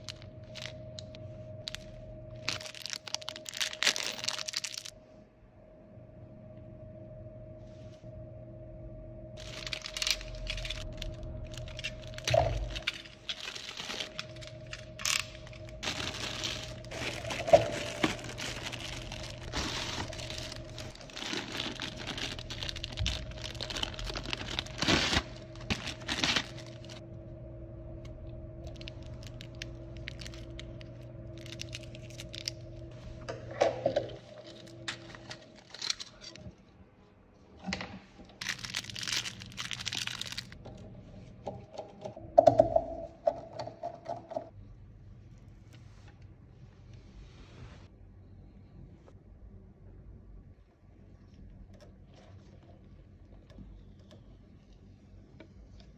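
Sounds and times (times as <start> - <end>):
plastic packaging crinkling: 0.0 - 5.0, 9.4 - 27.0, 28.6 - 33.0, 34.2 - 36.6, 38.3 - 40.6
faint steady hum: 0.0 - 55.9.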